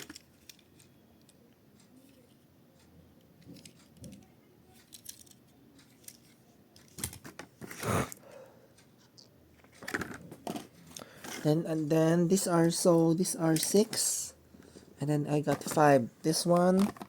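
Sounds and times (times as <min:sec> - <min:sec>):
toy cars clicking: 0:00.0 - 0:07.3
packaging rustling: 0:16.6 - 0:17.0.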